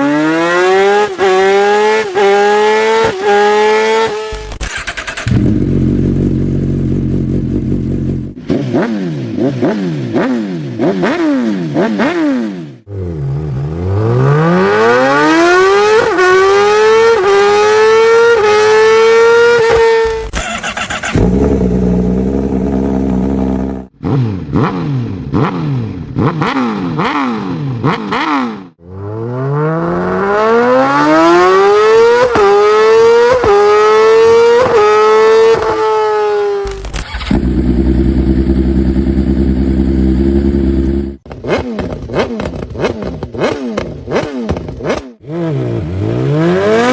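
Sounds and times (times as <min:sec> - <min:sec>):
motorcycle accelerating with upshifts: 0:00.0 - 0:46.9
motorcycle throttle blips: 0:04.0 - 0:11.2, 0:17.1 - 0:30.3
motorcycle engine running steadily: 0:04.3 - 0:14.9, 0:21.2 - 0:28.8, 0:36.8 - 0:46.2.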